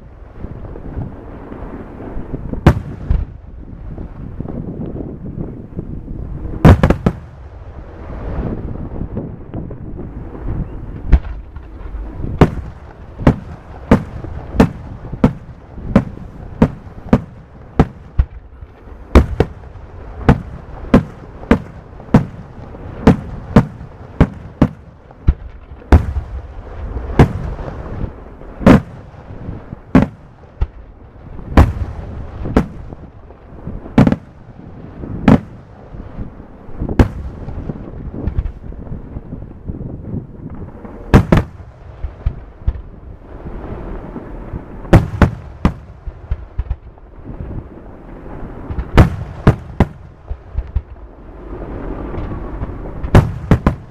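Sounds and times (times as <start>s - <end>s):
fireworks bursting: 0.0s - 53.9s
low rumble and echo: 2.2s - 43.4s.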